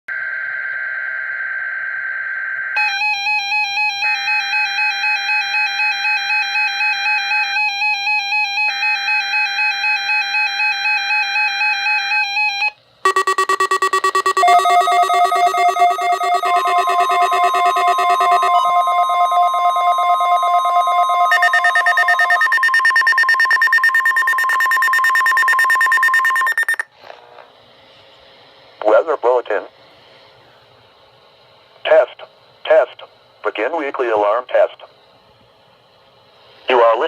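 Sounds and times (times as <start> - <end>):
high electronic alarm tone: 0.1 - 7.7, 8.8 - 26.8
electronic alarm beeping: 12.6 - 26.9
buzzy digital data tones: 13.1 - 26.8.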